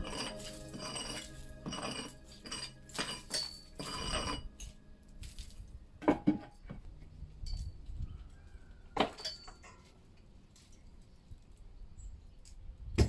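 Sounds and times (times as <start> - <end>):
background music: 0.0 - 6.7.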